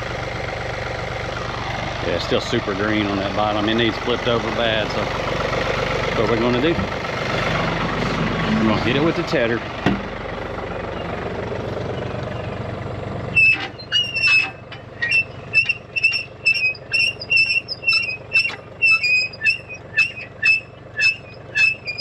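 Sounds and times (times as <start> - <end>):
tractor engine running: 0.0 - 22.0
hay tedder squealing: 13.3 - 22.0.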